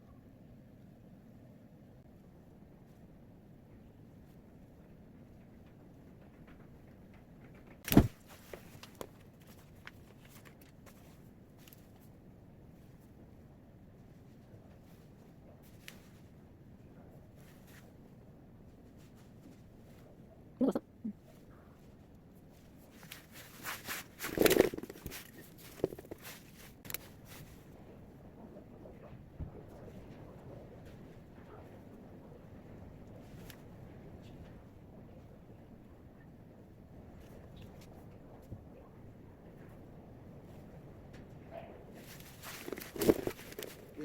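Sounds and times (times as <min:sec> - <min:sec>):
small objects rustling and clicking: 0:05.6 - 0:12.1, 0:22.5 - 0:27.7, 0:42.0 - 0:44.0.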